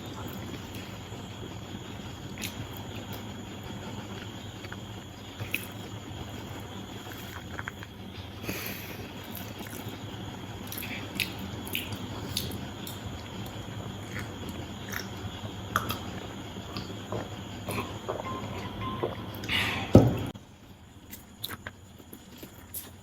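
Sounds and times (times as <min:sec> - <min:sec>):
steady low hum: 0:00.0 - 0:23.0
person chewing food: 0:04.1 - 0:08.0, 0:10.6 - 0:18.0, 0:21.0 - 0:23.0.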